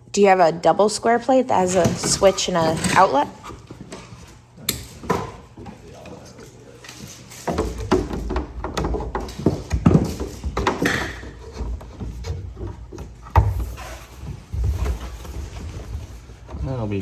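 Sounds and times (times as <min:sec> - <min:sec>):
hard objects knocking and clattering: 0:07.0 - 0:16.6.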